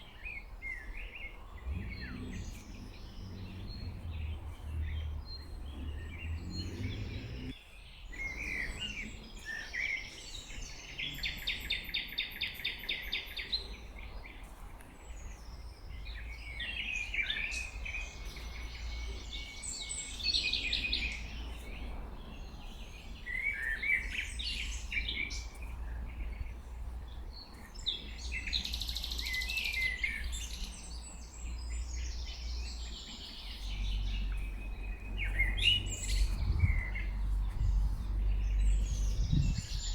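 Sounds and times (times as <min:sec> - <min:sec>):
songbirds singing: 0:00.0 - 0:39.9
low rumble: 0:01.3 - 0:07.6, 0:31.9 - 0:39.9.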